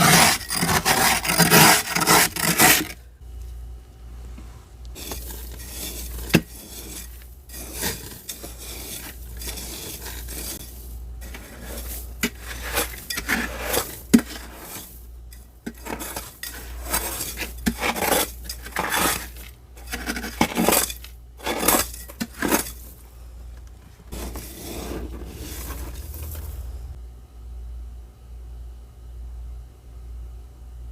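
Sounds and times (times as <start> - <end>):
frost being scraped: 0.0 - 3.0, 4.9 - 23.0, 24.1 - 26.7.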